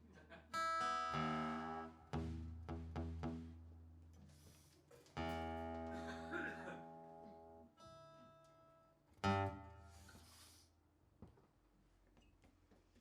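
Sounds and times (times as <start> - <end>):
guitar chords strummed: 0.6 - 3.6, 5.2 - 8.1, 9.2 - 10.1.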